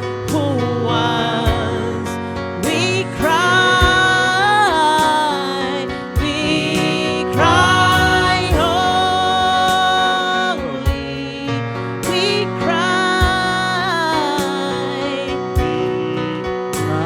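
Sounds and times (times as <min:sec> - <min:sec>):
gospel band playing: 0:00.0 - 0:17.0
person singing long notes: 0:00.2 - 0:17.0
drum hits: 0:07.3 - 0:08.9.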